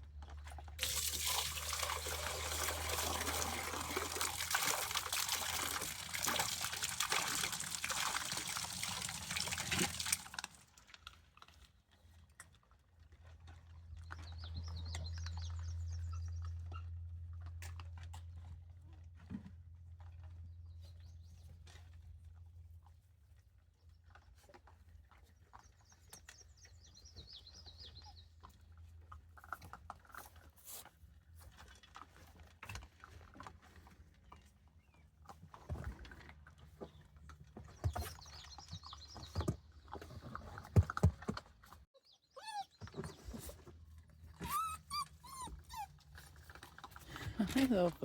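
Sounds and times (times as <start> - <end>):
puppies whining and yelping: 42.0 - 46.6.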